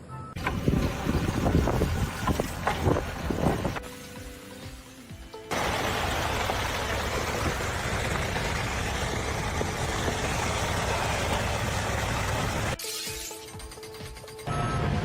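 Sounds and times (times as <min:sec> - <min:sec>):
engine running: 0:00.4 - 0:04.0, 0:05.5 - 0:12.8.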